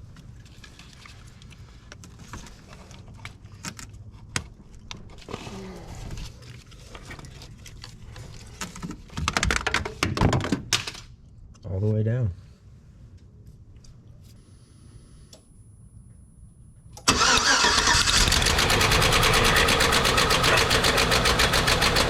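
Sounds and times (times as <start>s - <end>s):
steady low hum: 11.2s - 17.1s.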